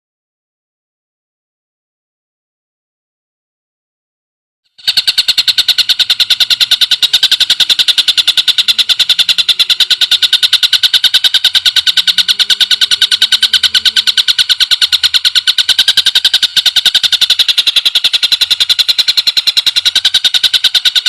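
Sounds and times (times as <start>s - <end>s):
bird high rapid trill: 4.8s - 21.0s.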